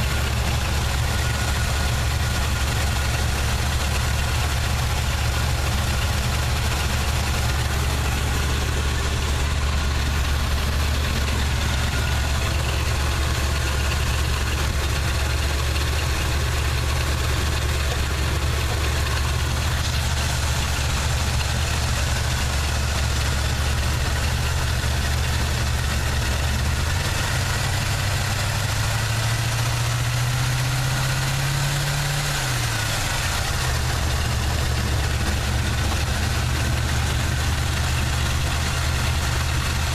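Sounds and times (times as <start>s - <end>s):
engine idling with misfire: 0.0s - 39.9s.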